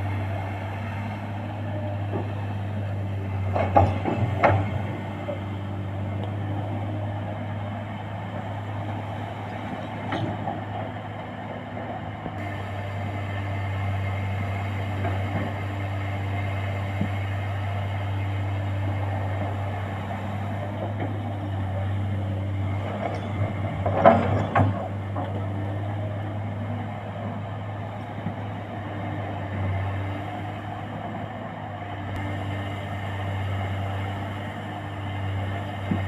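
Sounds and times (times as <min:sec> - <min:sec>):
excavator diesel engine droning: 0:00.0 - 0:36.0
clatter of knocks: 0:03.5 - 0:04.8, 0:23.0 - 0:25.4.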